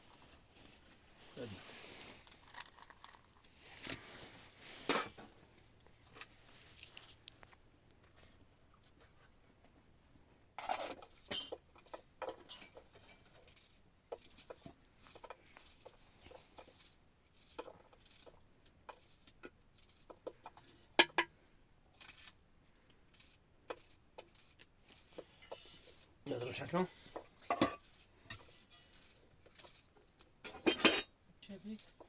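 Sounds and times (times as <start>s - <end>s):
objects clattering: 26.4s - 28.9s, 30.4s - 31.2s.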